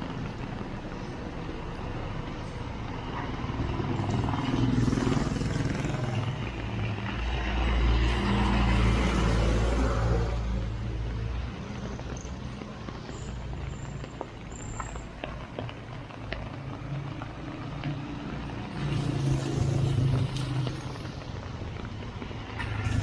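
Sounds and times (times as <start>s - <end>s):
rain on wet road: 0.0s - 23.0s.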